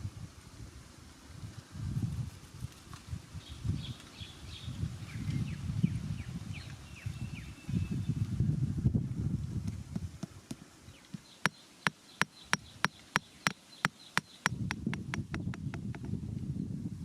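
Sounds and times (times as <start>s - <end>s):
sharp evenly spaced taps: 10.2s - 16.1s.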